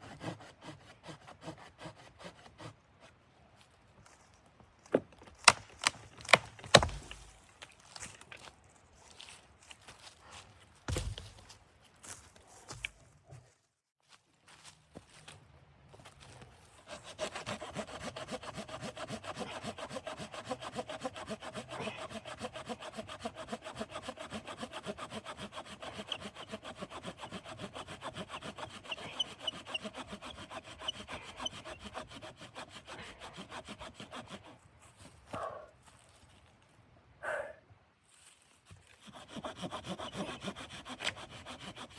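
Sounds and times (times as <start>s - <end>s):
hand saw cutting wood: 0.0s - 3.2s, 6.3s - 7.3s, 16.8s - 34.6s, 38.7s - 41.9s.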